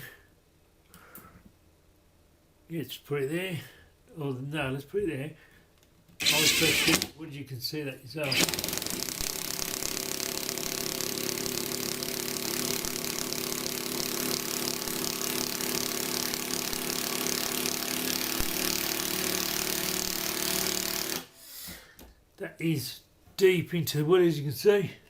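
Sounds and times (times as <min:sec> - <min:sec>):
impact wrench driving screw: 0:06.2 - 0:07.1, 0:08.2 - 0:21.3.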